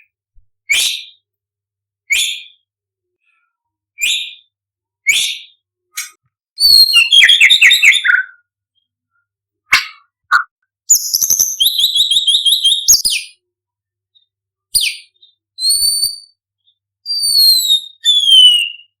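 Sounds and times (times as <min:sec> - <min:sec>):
bird singing: 0:06.6 - 0:08.5, 0:09.8 - 0:13.4.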